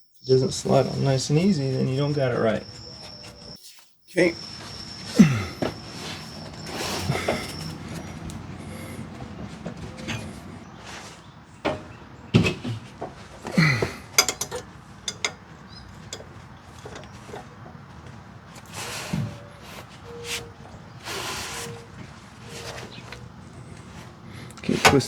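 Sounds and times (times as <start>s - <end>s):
metal knocks and scraping: 4.4s - 25.0s.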